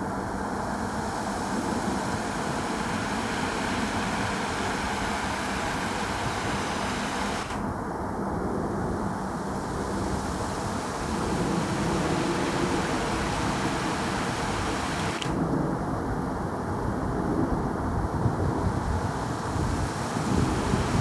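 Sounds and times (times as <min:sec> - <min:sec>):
steady rushing noise: 0:00.0 - 0:21.0
sharp click: 0:14.9 - 0:15.4.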